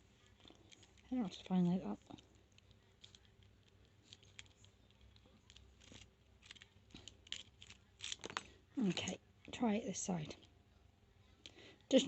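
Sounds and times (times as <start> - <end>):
lock pick clicking and scraping: 2.6 - 9.2.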